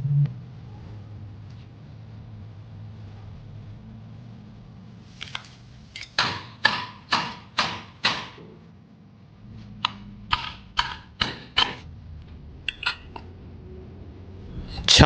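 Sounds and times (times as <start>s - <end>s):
hammer striking metal: 6.0s - 8.6s, 9.8s - 11.8s.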